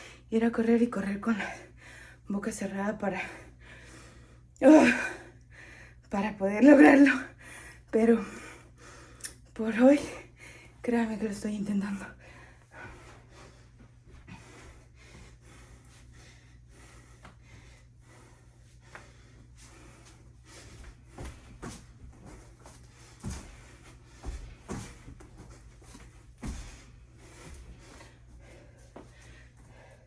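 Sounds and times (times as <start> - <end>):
woman breathing hard: 1.6 - 2.3, 3.2 - 6.0, 7.3 - 9.4, 12.2 - 21.7, 25.9 - 30.0
body thumping on floor: 23.2 - 26.9.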